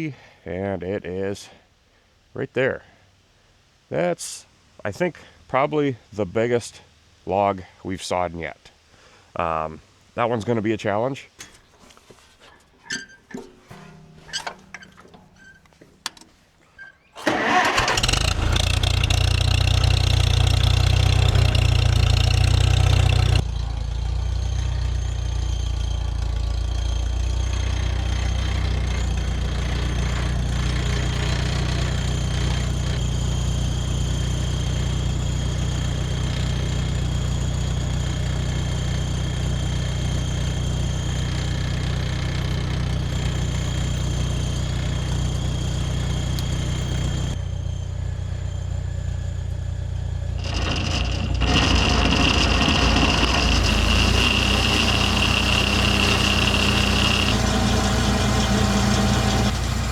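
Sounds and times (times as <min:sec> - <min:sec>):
tractor engine starting and idling: 0:11.4 - 0:59.9.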